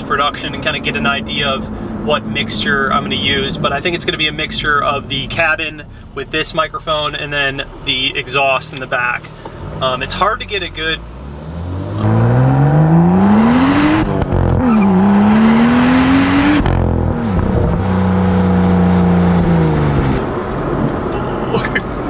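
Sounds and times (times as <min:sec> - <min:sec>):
car engine revving: 0:00.0 - 0:22.0.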